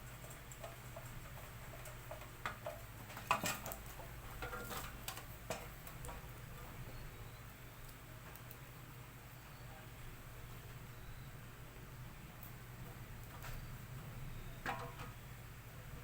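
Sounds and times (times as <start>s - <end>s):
low steady hum: 0.0s - 16.0s
light clicks and taps of parts: 7.8s - 8.7s.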